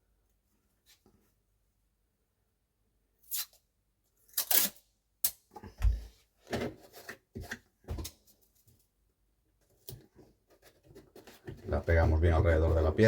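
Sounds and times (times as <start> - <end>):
masking tape ripping: 4.3 - 4.8.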